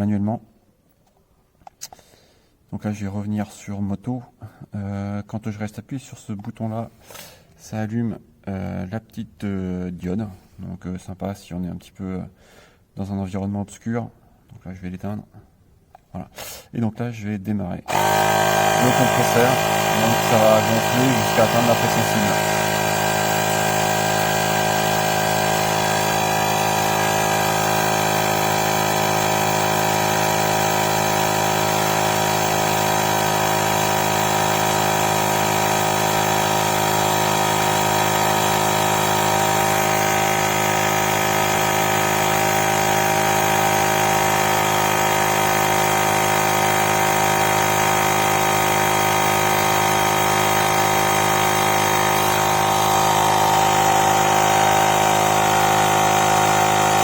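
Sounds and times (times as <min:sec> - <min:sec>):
electric tyre inflator humming: 0:17.9 - 0:57.0.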